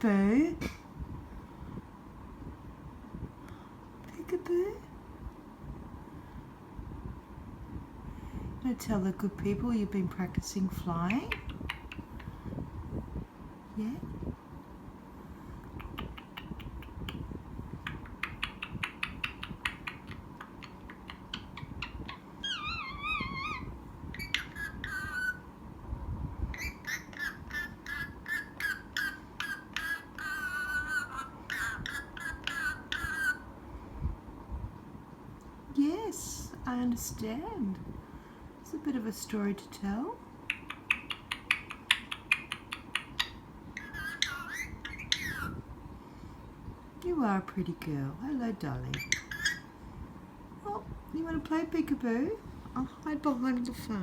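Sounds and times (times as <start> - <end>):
parrot clicking: 11.1 - 12.3, 15.6 - 17.2, 17.8 - 22.2, 40.5 - 45.4
parrot whistling: 21.0 - 25.4, 40.5 - 45.6, 48.9 - 49.6
parrot chirping whistles: 21.6 - 25.4, 40.5 - 45.6, 48.9 - 49.7.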